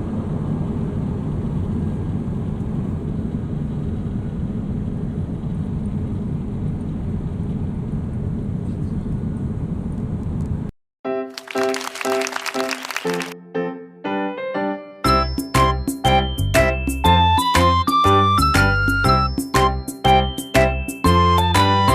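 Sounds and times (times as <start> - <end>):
jet airliner cabin noise: 0.0 - 10.7
music: 11.1 - 21.9.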